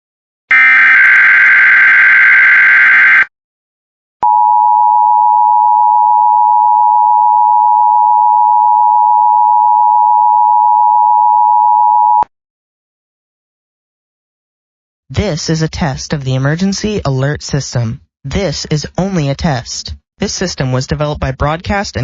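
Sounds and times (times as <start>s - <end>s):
loud buzzing data burst: 0.5s - 3.3s.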